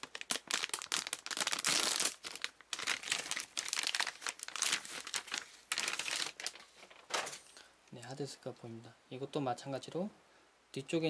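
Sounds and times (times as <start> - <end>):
packaging crinkling and tearing: 0.0 - 7.4.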